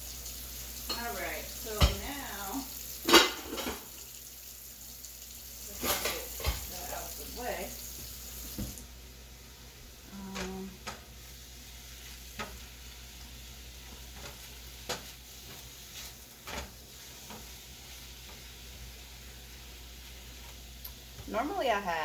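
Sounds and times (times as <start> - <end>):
food sizzling in a frying pan: 0.0 - 22.0
cookware and utensils clicking: 0.9 - 2.2, 3.0 - 4.0, 5.7 - 6.9.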